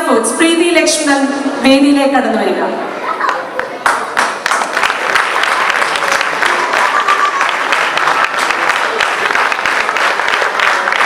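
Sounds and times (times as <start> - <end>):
audience applauding: 3.1 - 11.0.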